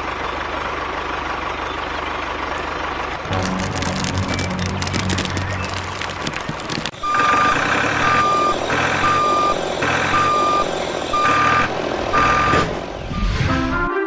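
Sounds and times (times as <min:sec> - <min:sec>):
reversing alarm beeping: 0:07.0 - 0:13.5.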